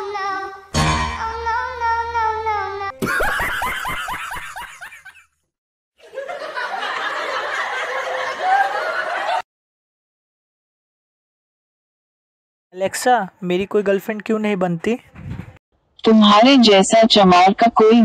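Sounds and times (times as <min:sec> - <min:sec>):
pulsed laughter: 0:03.0 - 0:05.4, 0:06.0 - 0:09.4.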